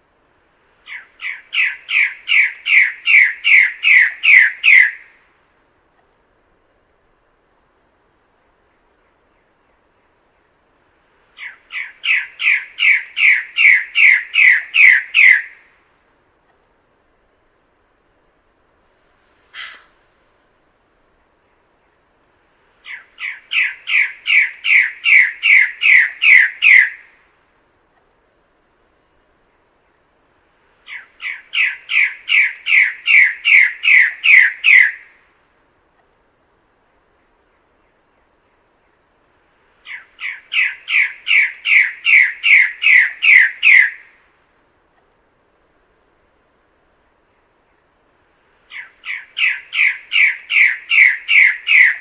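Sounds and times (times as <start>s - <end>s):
bird harsh downward calls: 0.9s - 5.1s, 11.4s - 15.6s, 19.5s - 20.0s, 22.8s - 27.1s, 30.9s - 35.1s, 39.9s - 44.1s, 48.7s - 52.0s.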